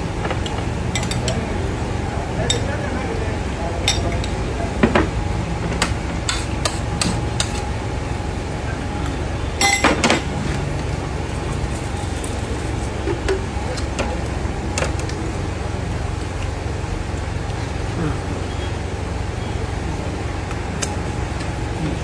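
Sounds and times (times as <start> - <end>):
spoons clinking on plates: 0.4 - 1.4, 2.4 - 2.8, 3.8 - 4.4, 9.6 - 10.4.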